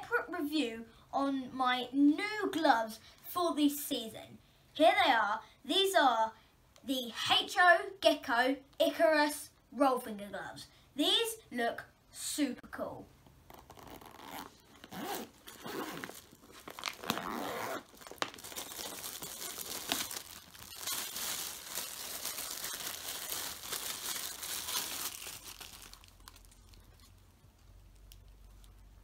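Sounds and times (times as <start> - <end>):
packaging crinkling and tearing: 13.5 - 27.3.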